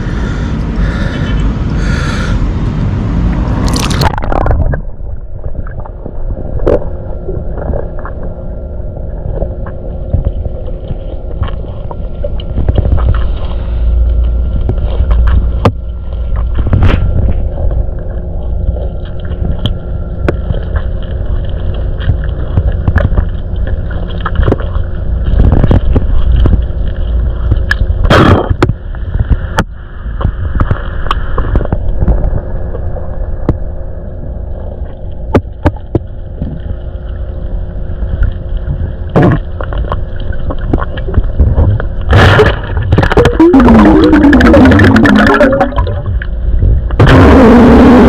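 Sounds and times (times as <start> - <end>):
low underwater rumble: 0.0 - 48.0
gurgling bubbles: 3.5 - 29.6, 38.1 - 48.0.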